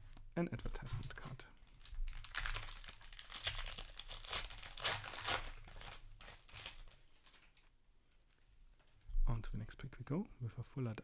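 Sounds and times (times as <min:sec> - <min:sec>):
foil wrapper crinkling and tearing: 0:00.8 - 0:07.6.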